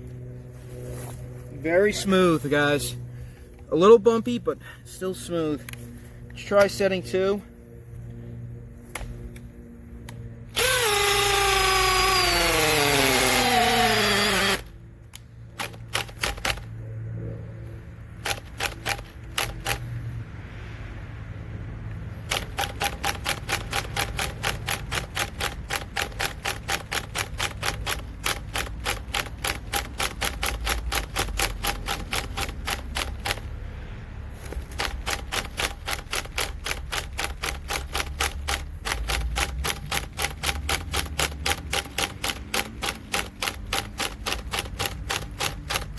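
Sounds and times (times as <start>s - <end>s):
sharp clicks: 8.9s - 16.7s, 18.2s - 20.0s, 22.1s - 33.5s, 34.4s - 45.9s
hammer drill whining: 10.5s - 14.7s.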